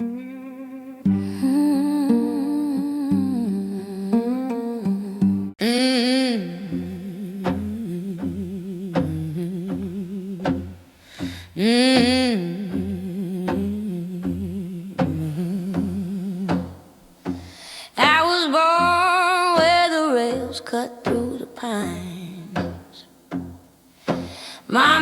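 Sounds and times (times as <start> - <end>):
woman humming wordless notes: 1.1 - 10.8, 11.5 - 16.9, 24.7 - 25.0
wavering guitar figure: 6.2 - 10.9.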